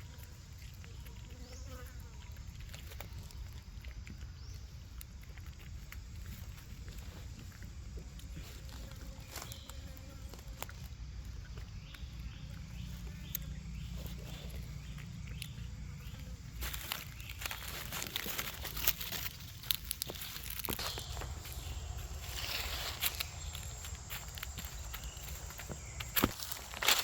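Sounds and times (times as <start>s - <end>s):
rustling and crackling: 0.0s - 27.0s
steady low rumble: 11.2s - 27.0s.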